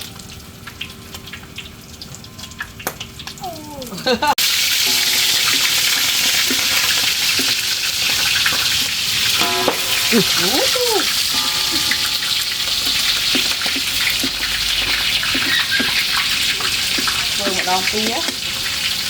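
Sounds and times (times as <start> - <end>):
food sizzling in hot oil: 4.2 - 19.0.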